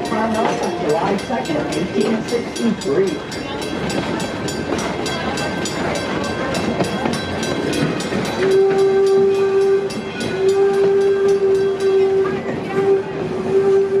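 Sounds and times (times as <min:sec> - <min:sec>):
steam train running: 0:00.0 - 0:14.0
steam whistle blast: 0:08.4 - 0:14.0.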